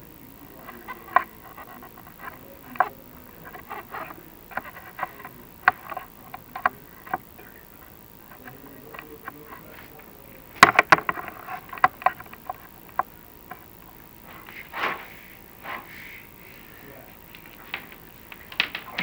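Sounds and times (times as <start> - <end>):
camera cable knocking against flue: 10.6 - 13.1.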